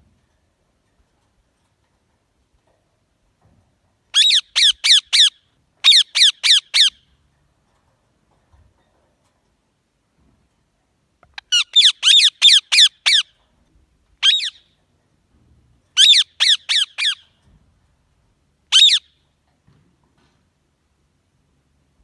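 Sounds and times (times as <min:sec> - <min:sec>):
parrot squawking: 0:04.2 - 0:07.0, 0:11.3 - 0:13.3, 0:14.2 - 0:14.6, 0:16.0 - 0:17.2, 0:18.7 - 0:19.1.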